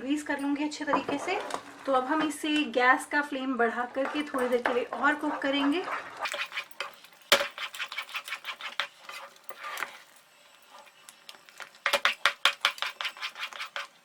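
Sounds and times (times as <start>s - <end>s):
ladle scraping a pan: 5.0s - 14.0s.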